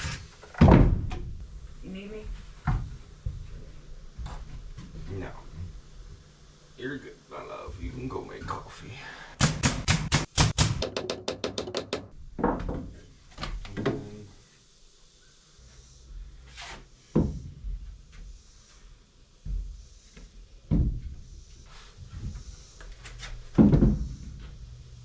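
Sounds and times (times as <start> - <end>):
boards and tools knocking: 10.7 - 12.1.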